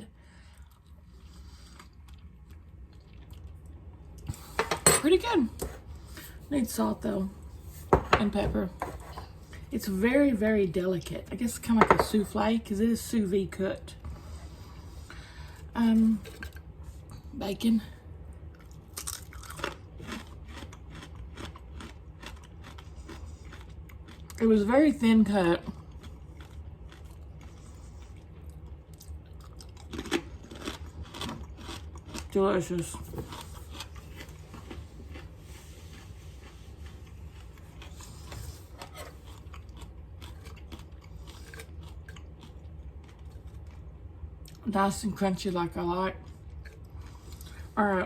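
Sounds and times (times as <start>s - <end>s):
person chewing crisp bacon: 0.4s - 4.6s, 18.4s - 24.5s, 25.6s - 44.7s, 46.2s - 47.8s.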